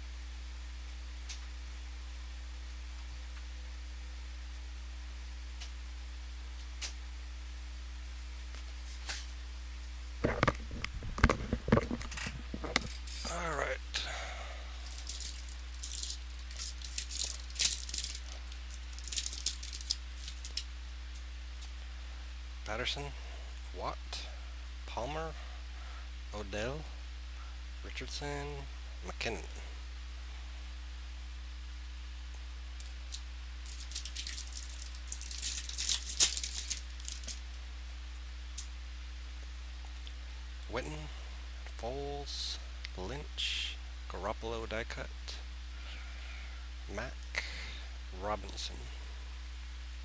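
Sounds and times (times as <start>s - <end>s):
low electrical hum: 0.0s - 50.0s
trading cards rustling and clicking: 10.2s - 13.5s, 14.8s - 20.7s, 32.8s - 37.5s
card packaging snap: 33.7s - 37.4s.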